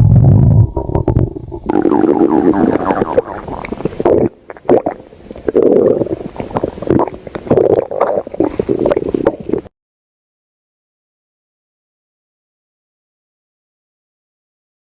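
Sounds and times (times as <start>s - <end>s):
stomach growling: 0.0s - 9.7s.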